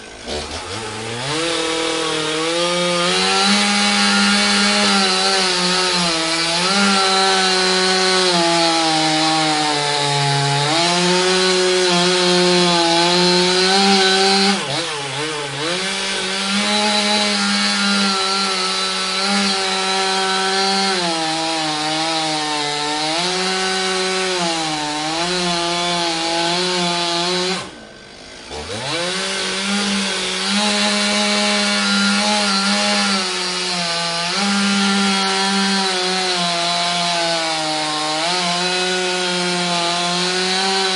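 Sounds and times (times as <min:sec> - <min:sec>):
chainsaw cutting wood: 0:00.0 - 0:40.9.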